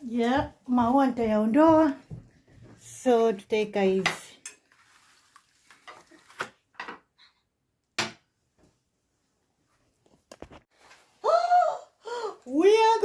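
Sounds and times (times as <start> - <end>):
dishes and cutlery clinking: 4.0 - 4.7.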